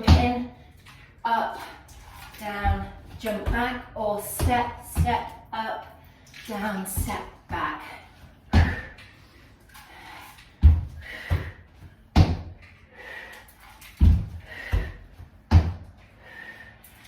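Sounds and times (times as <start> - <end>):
feet thudding on floor: 10.6 - 11.6, 12.2 - 12.6, 14.0 - 15.8.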